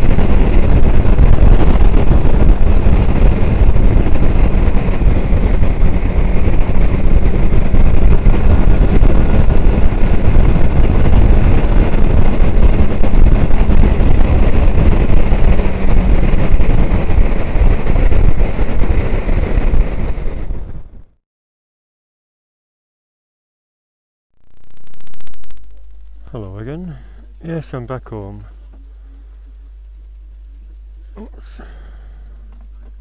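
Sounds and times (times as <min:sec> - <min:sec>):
wind buffeting microphone: 0:00.0 - 0:21.1
motorcycle engine: 0:00.0 - 0:21.2, 0:24.4 - 0:33.0.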